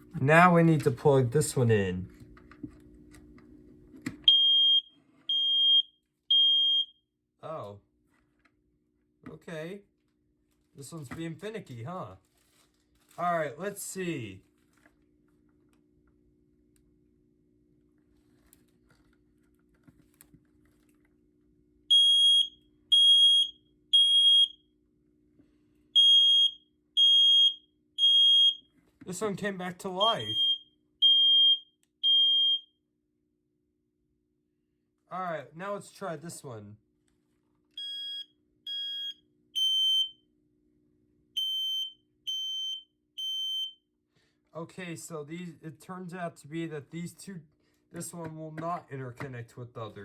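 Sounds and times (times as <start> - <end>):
smoke alarm beeps: 4.3 - 7.0, 21.9 - 24.7, 26.0 - 28.7, 30.0 - 32.8, 37.8 - 40.2, 41.4 - 43.8.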